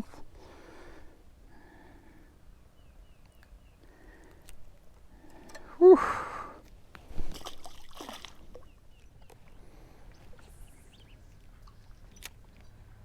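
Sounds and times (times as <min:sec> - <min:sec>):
water sloshing: 0:07.0 - 0:09.6
faint bird chirps: 0:08.6 - 0:12.8.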